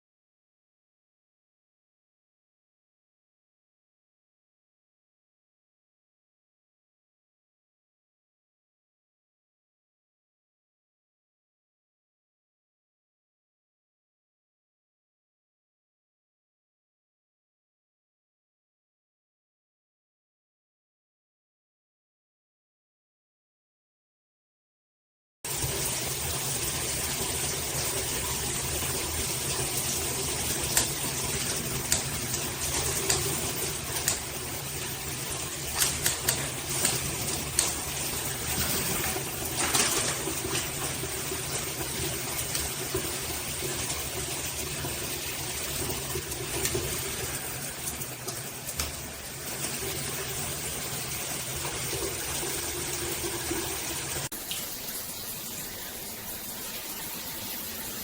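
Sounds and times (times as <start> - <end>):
water spraying from shower head: 25.5 - 58.0.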